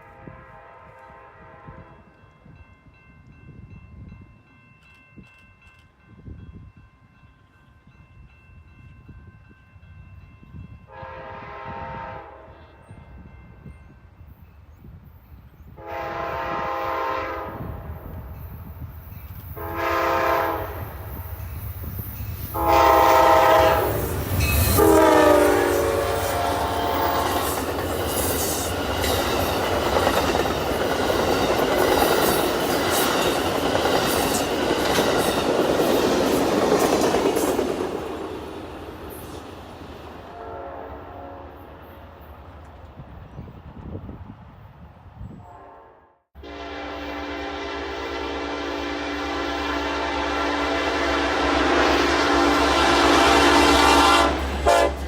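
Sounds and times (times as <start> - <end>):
locomotive air horn: 0.0 - 2.1, 10.9 - 12.8, 15.8 - 18.0, 19.6 - 21.2, 22.5 - 27.6, 40.2 - 41.6, 45.4 - 55.0
train rumbling past: 0.0 - 55.0.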